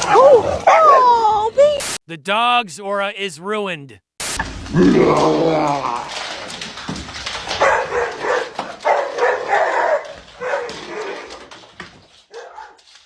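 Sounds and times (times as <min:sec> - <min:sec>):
dog barking: 0:00.0 - 0:01.6, 0:07.5 - 0:11.4, 0:12.3 - 0:12.8
dog whining: 0:00.0 - 0:01.8.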